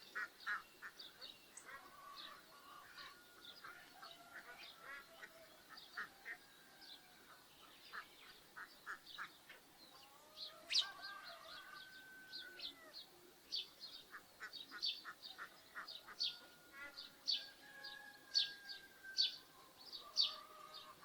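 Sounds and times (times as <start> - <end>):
ducks and geese calling: 1.6 - 6.5, 14.0 - 17.5, 19.6 - 21.0.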